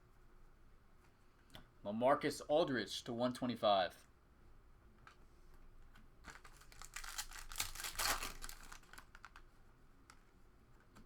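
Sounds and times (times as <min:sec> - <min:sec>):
trading cards rustling and clicking: 0:06.3 - 0:09.4.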